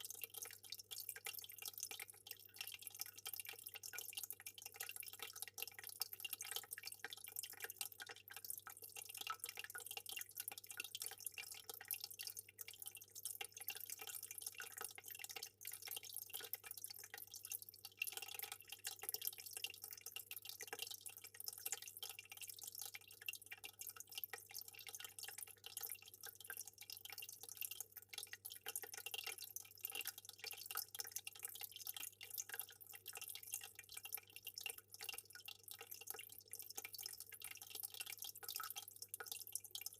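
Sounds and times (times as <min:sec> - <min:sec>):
aquarium water bubbling: 0:00.0 - 0:39.9.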